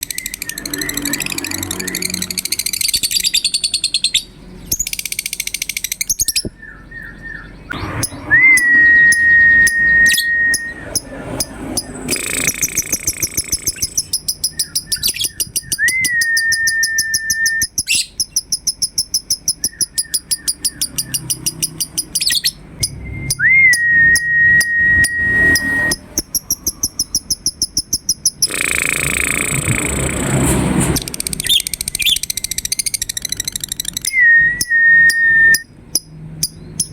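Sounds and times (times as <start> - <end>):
lovebird chattering trills: 0.0 - 23.4, 24.2 - 30.2, 31.2 - 34.2
long rising whistle: 8.1 - 10.9, 23.0 - 26.0.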